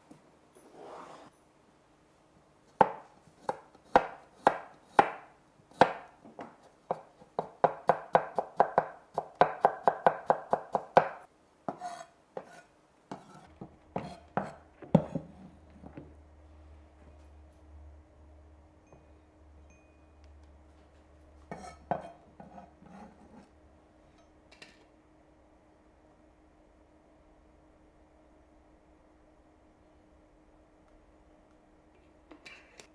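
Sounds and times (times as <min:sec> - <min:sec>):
knife chopping on cutting board: 0:02.8 - 0:15.3.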